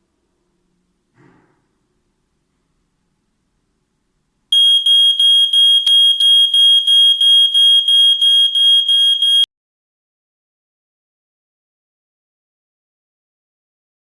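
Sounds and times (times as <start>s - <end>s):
smoke detector beeping: 4.5s - 9.5s.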